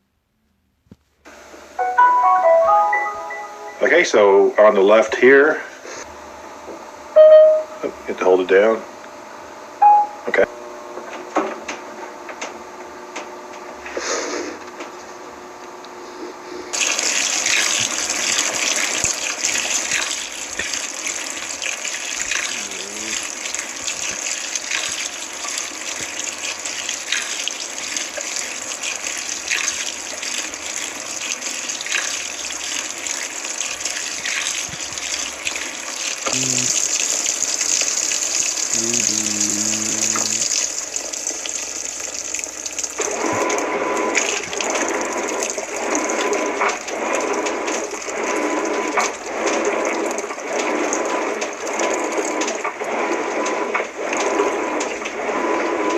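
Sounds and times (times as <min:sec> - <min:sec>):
water pouring into washing machine: 0:16.7 - 0:55.9.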